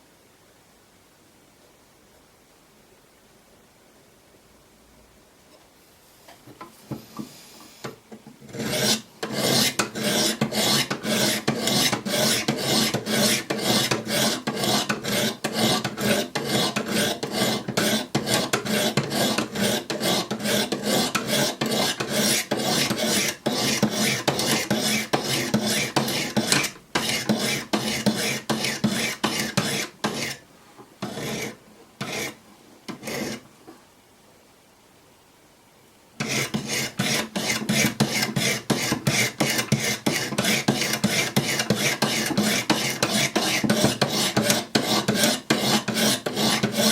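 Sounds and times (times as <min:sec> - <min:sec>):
sharpening stones rasping on knife: 0:08.5 - 0:30.4, 0:31.0 - 0:32.4, 0:36.2 - 0:46.9.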